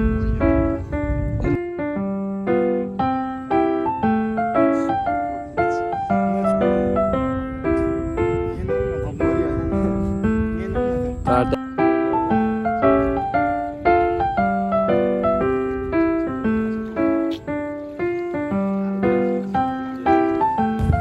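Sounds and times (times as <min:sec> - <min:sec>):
low rumble: 0:00.0 - 0:01.7
keyboard melody: 0:00.0 - 0:21.0.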